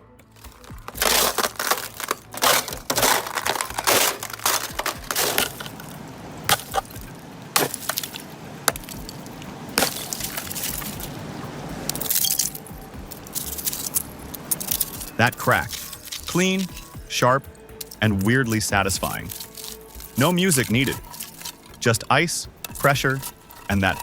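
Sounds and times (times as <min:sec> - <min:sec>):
ice cracking and breaking: 0:00.4 - 0:11.2, 0:11.9 - 0:17.1, 0:19.0 - 0:21.8, 0:22.7 - 0:24.0
glassy ice clinks: 0:11.9 - 0:17.0.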